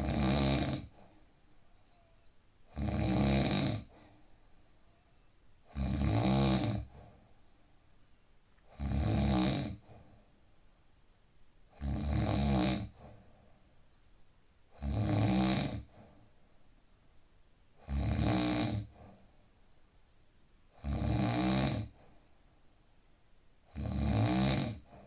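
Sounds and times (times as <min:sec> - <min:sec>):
man snoring: 0:00.0 - 0:01.0, 0:02.7 - 0:03.9, 0:05.7 - 0:07.0, 0:08.7 - 0:09.9, 0:11.8 - 0:13.0, 0:14.8 - 0:15.9, 0:17.8 - 0:18.9, 0:20.8 - 0:22.0, 0:23.7 - 0:25.0.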